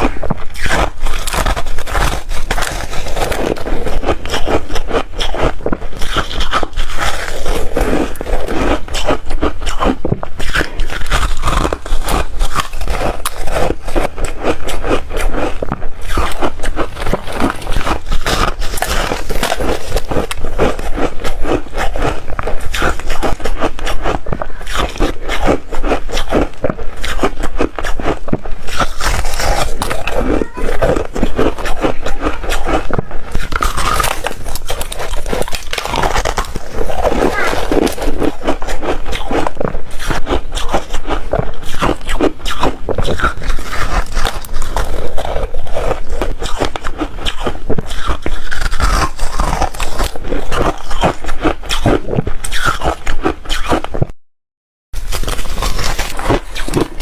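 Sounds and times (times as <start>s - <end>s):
chewing crunchy ice: 0.0s - 54.2s, 55.0s - 57.0s.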